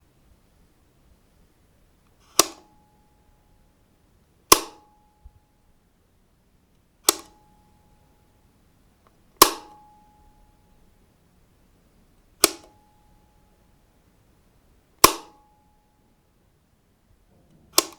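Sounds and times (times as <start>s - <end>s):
light switch clicking: 12.4s - 12.8s.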